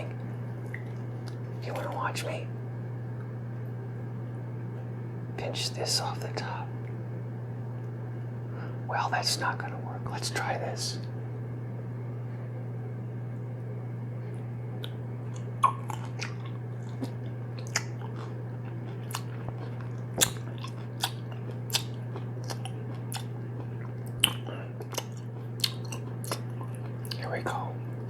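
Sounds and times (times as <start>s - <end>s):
low hum: 0.0s - 28.0s
chewing mouth sounds: 14.8s - 28.0s.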